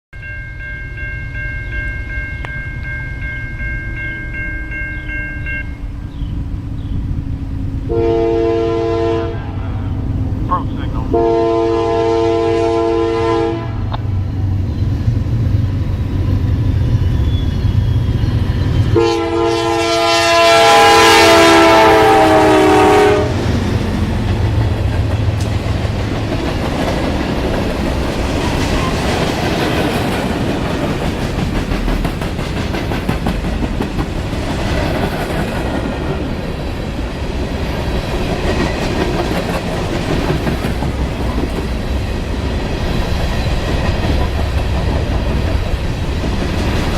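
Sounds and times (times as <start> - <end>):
locomotive air horn chord: 7.9 - 9.8, 10.5 - 14.0, 19.0 - 23.4
train wheels clicking over rail joints: 23.4 - 46.9.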